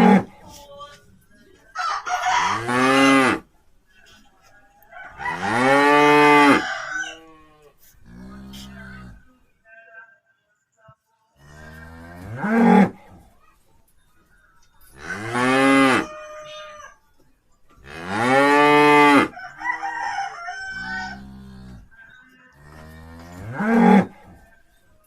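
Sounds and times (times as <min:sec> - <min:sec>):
cattle mooing: 0:00.0 - 0:00.3, 0:02.4 - 0:03.4, 0:05.3 - 0:09.3, 0:11.4 - 0:13.0, 0:15.0 - 0:16.8, 0:17.8 - 0:19.3, 0:20.6 - 0:21.9, 0:22.6 - 0:24.2
low cattle sounds: 0:00.0 - 0:01.1, 0:05.1 - 0:09.5, 0:11.4 - 0:13.4, 0:17.7 - 0:24.7.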